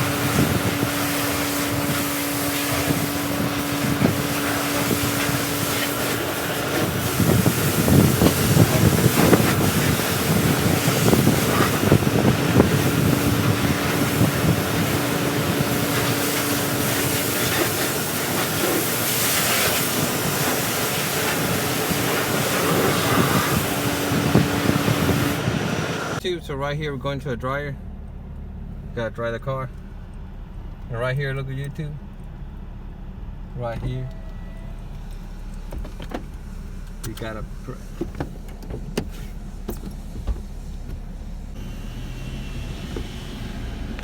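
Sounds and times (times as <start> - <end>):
water spraying over car: 0.0 - 26.2, 33.9 - 44.0
low hum: 22.9 - 44.0.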